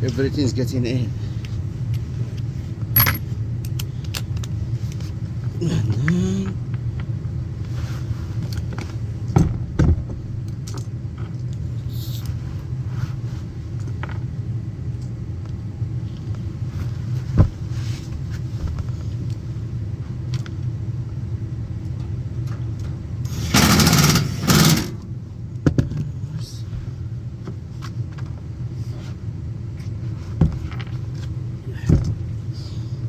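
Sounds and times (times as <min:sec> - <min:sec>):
low mechanical hum: 0:00.0 - 0:33.0
sharp clicks and knocks: 0:23.5 - 0:25.0.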